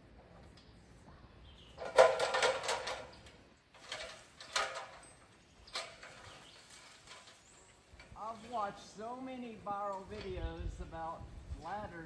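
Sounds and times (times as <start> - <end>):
metal ladder clanking and scraping: 1.7 - 8.8
ladder knocks: 1.8 - 3.1.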